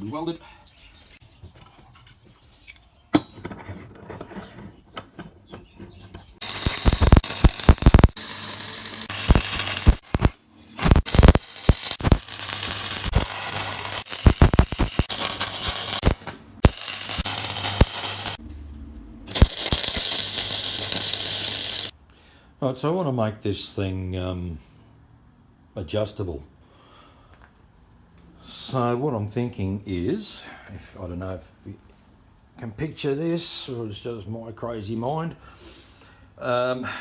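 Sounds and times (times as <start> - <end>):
angle grinder grinding steel: 6.4 - 18.4, 19.3 - 21.9.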